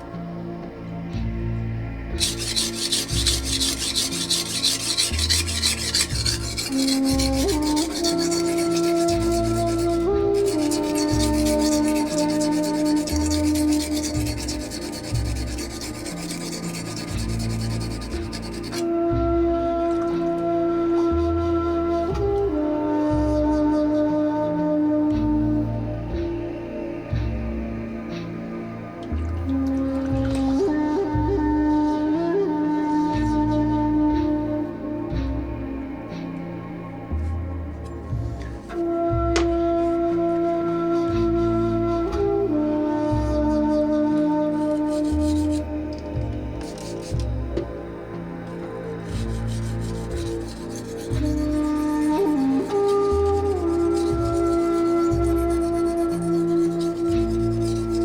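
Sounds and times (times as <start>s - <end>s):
slow calm instrumental music: 0.0s - 58.0s
knife scraping on whetstone: 2.2s - 18.8s, 44.6s - 45.7s, 46.6s - 47.3s, 49.0s - 58.0s.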